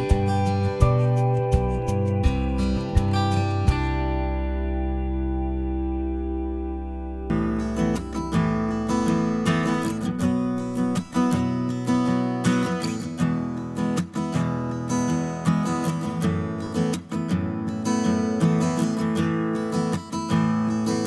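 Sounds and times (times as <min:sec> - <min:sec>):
held chord: 0:00.0 - 0:11.6
acoustic guitar strumming: 0:00.0 - 0:21.0.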